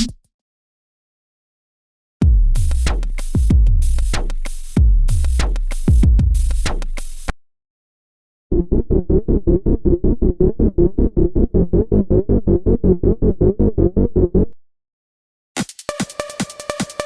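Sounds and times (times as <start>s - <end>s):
deep bass kicks dropping in pitch: 2.2s - 6.8s
snare and hi-hat hits: 2.2s - 7.3s, 15.6s - 17.0s
rhythmic synth pattern: 15.9s - 17.0s.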